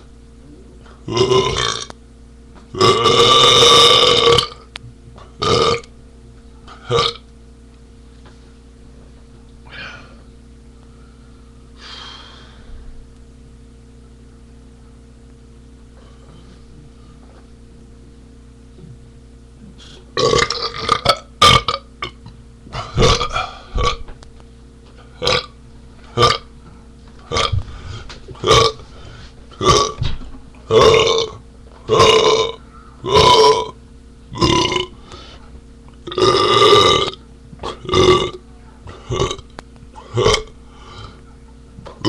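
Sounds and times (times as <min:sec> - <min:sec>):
man burping: 0:01.0 - 0:01.9, 0:02.7 - 0:04.7, 0:05.4 - 0:05.9, 0:06.8 - 0:07.2, 0:19.6 - 0:24.1, 0:25.2 - 0:25.6, 0:26.2 - 0:26.5, 0:27.3 - 0:27.6, 0:28.4 - 0:28.8, 0:29.5 - 0:30.0, 0:30.7 - 0:35.0, 0:36.0 - 0:41.2.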